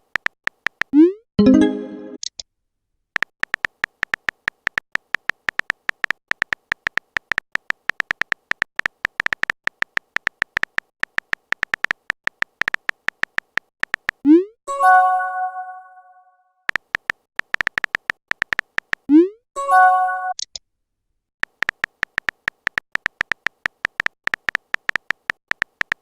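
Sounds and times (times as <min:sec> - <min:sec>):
phone keyboard typing clicks: 0:00.0 - 0:00.9, 0:03.2 - 0:14.2, 0:16.7 - 0:19.1, 0:21.4 - 0:26.0
message chime: 0:01.4 - 0:02.2, 0:14.7 - 0:16.2.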